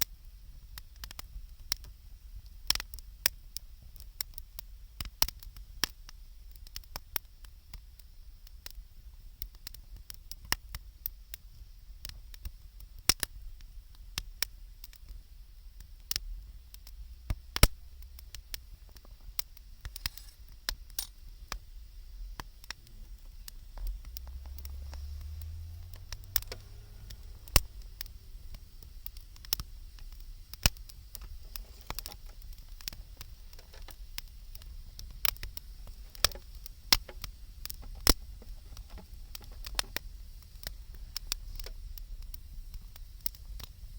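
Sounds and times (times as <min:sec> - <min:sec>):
burning wood popping: 0:00.0 - 0:43.9
wood fire crackling: 0:00.0 - 0:43.9
low rumble: 0:22.2 - 0:33.5, 0:34.2 - 0:41.2.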